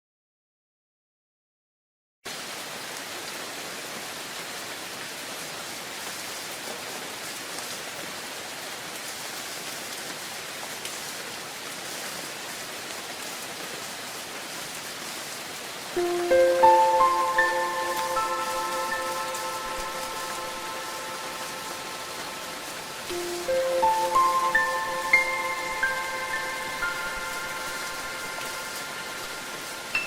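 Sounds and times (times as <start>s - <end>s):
steady rain falling: 2.3s - 30.0s
bell-like chime notes: 16.0s - 30.0s.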